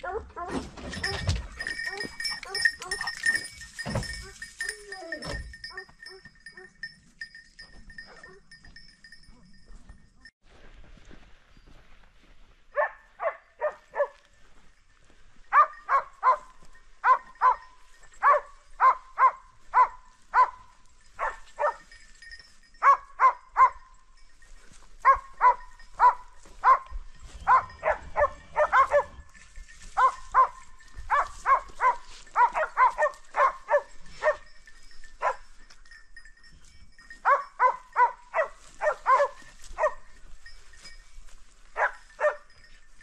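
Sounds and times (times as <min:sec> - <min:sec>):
dog barking: 0:12.8 - 0:14.2, 0:15.5 - 0:21.8, 0:22.8 - 0:23.9, 0:25.0 - 0:29.2, 0:30.0 - 0:34.5, 0:35.2 - 0:35.4, 0:37.2 - 0:40.1, 0:41.8 - 0:42.5.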